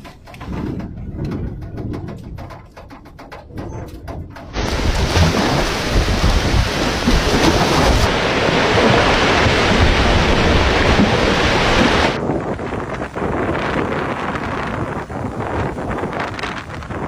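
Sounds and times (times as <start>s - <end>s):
hurricane wind on microphone: 0.0s - 17.0s
heavy rain: 4.5s - 16.8s.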